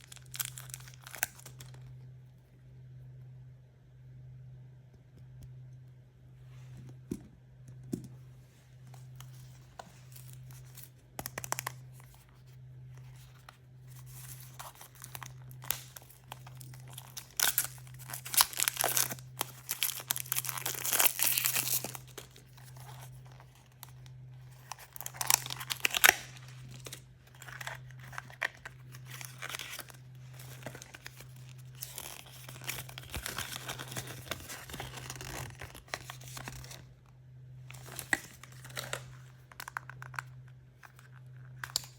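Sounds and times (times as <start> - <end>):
plastic packaging crinkling and tearing: 0.0 - 1.9, 9.2 - 12.2, 13.0 - 36.9, 37.7 - 41.9
steady low hum: 0.0 - 41.9.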